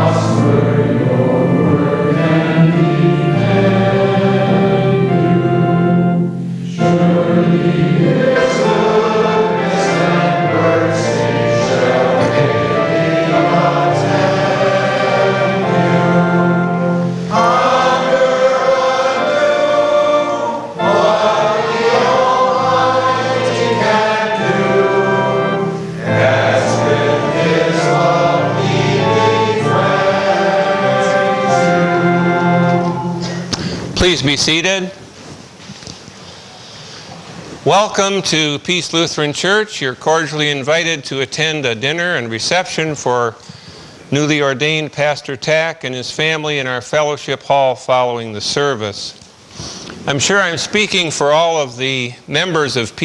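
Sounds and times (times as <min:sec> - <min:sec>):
congregation singing a hymn: 0:00.0 - 0:34.6
organ accompaniment: 0:00.0 - 0:35.0.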